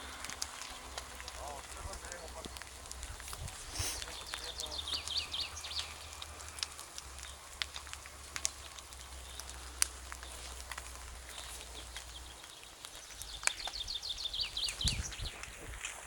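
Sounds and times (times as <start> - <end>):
campfire crackling: 0.0 - 16.0
small bird chirping: 3.8 - 6.6, 11.2 - 15.6.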